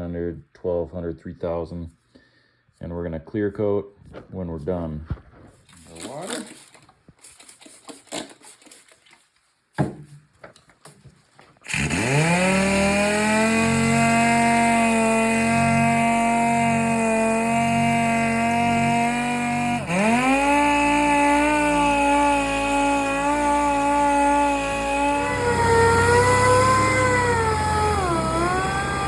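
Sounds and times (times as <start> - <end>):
power sander whining: 11.6 - 29.0.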